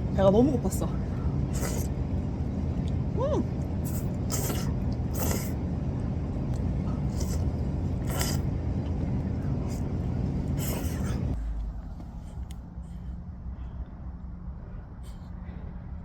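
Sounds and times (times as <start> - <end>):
car driving rumble: 0.0 - 15.0.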